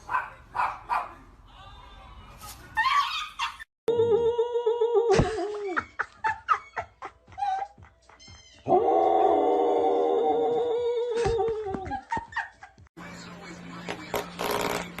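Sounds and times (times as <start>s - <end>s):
dog howling: 8.7s - 11.2s.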